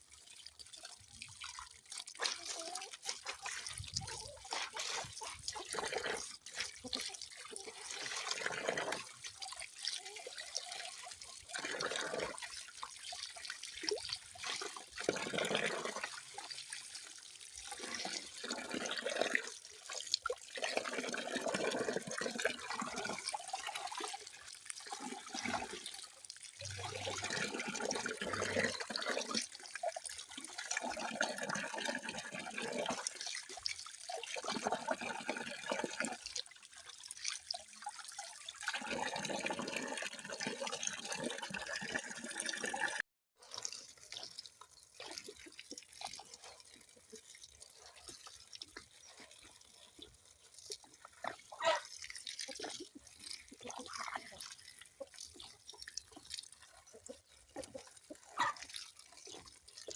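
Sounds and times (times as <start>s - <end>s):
running water splashing: 0.0s - 59.9s.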